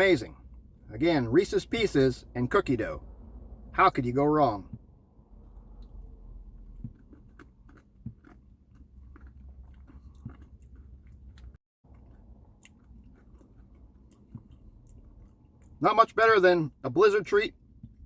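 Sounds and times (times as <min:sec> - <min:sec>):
faint chewing: 0:05.7 - 0:15.8.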